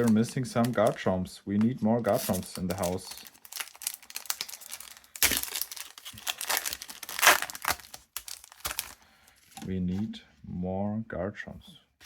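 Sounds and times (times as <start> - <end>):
foil wrapper crinkling and tearing: 0.0 - 1.0, 2.0 - 9.6.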